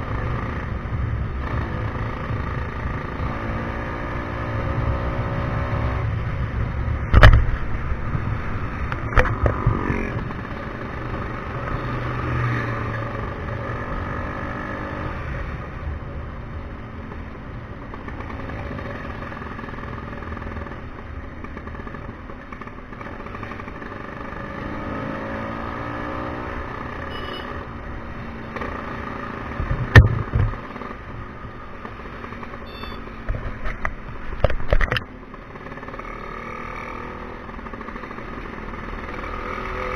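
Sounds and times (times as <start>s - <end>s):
sharp thumps: 29.6s - 30.6s.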